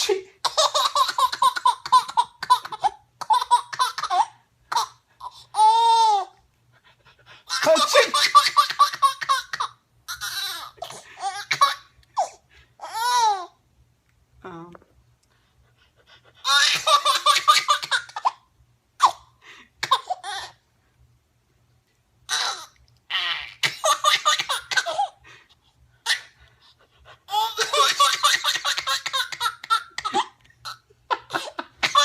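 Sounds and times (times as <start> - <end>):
baby laughing: 0.0 - 6.4, 7.4 - 13.5, 16.4 - 18.4, 19.8 - 20.6, 22.3 - 25.2, 26.0 - 26.4, 27.3 - 32.0.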